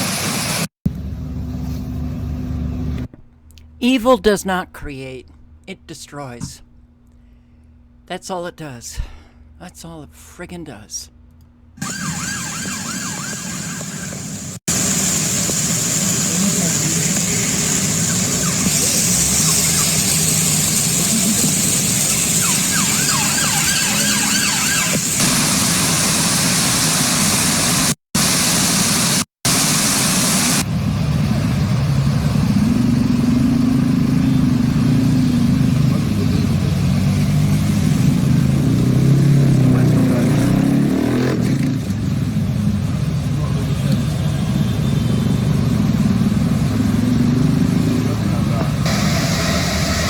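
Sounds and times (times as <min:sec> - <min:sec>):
vehicle engine running: 0:00.0 - 0:03.1, 0:11.8 - 0:50.0
hissing rush: 0:11.8 - 0:30.7, 0:47.6 - 0:50.0.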